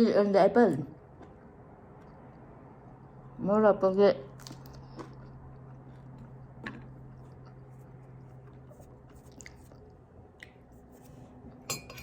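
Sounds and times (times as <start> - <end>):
steady low hum: 0.0 - 12.0
faint chewing: 4.3 - 11.6.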